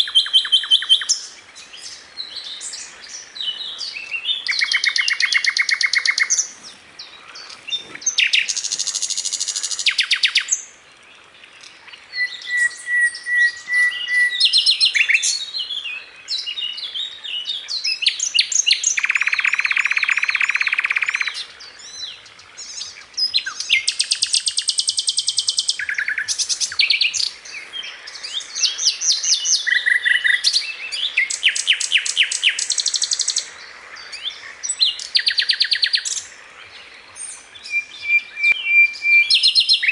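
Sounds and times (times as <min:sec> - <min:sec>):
flycatcher trills and chattering: 0:17.8 - 0:39.9.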